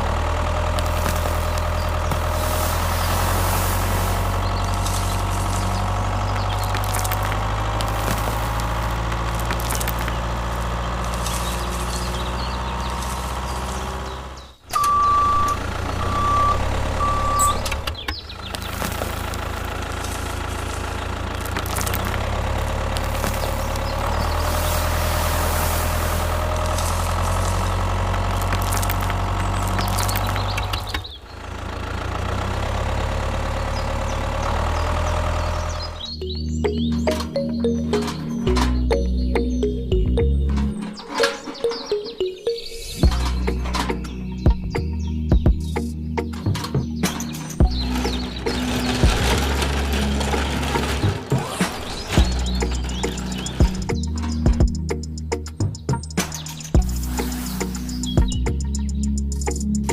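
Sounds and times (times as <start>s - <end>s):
vehicle engine idling: 0.0s - 59.9s
short beeps: 14.7s - 17.8s.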